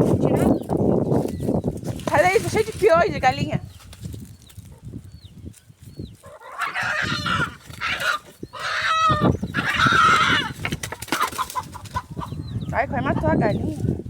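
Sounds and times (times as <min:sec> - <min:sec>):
chick peeps: 0:05.9 - 0:13.8
hen squawking: 0:06.2 - 0:12.4.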